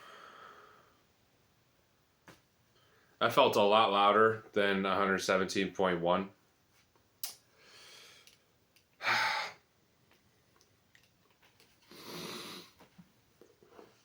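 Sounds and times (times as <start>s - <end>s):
man breathing: 0.0s - 1.1s, 7.5s - 8.4s, 9.0s - 9.7s.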